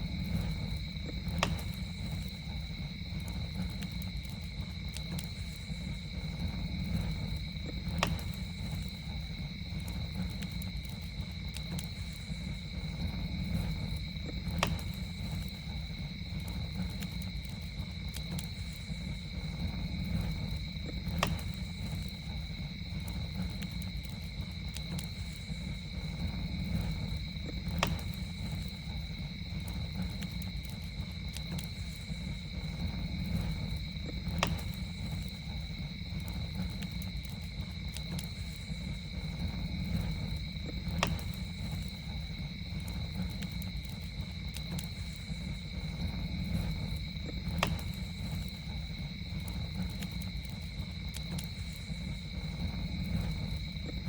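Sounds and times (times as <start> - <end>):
campfire crackling: 0.0 - 54.0
fire popping: 0.0 - 54.0
high insect drone: 0.0 - 54.0
low rumble of burning fire: 0.0 - 54.0.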